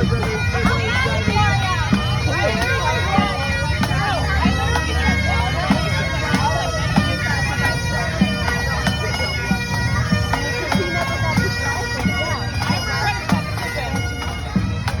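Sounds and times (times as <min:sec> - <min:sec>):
bagpipe music: 0:00.0 - 0:15.0
drum beat: 0:00.0 - 0:15.0.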